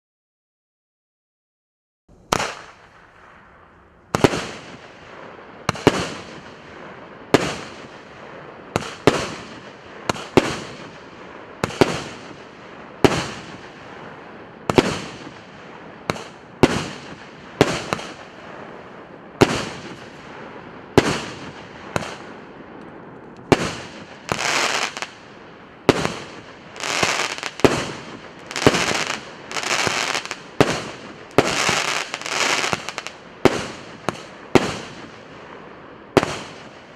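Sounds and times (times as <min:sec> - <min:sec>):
firework bangs: 0:02.1 - 0:36.9
firework crackle: 0:02.1 - 0:36.9
firework hiss: 0:23.5 - 0:35.2.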